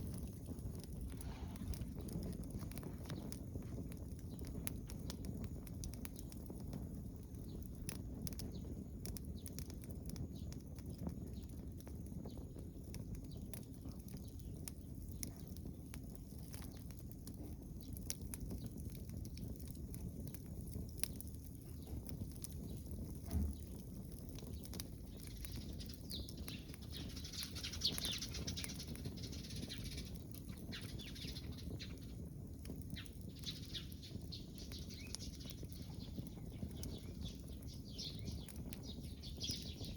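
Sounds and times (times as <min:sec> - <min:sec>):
low rumble: 0:00.0 - 0:05.2
bonfire crackling and popping: 0:00.0 - 0:39.9
thump: 0:23.3 - 0:23.6.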